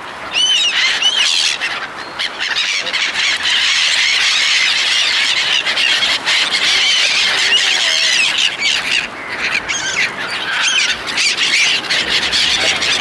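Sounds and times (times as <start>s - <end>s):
seagulls calling: 0.0s - 13.0s.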